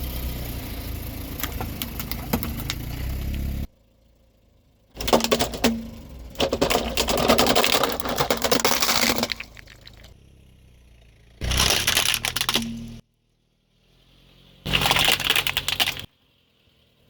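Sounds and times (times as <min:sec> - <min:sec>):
things crushed under car tyres: 0:05.0 - 0:10.2, 0:11.4 - 0:13.0, 0:14.7 - 0:16.1.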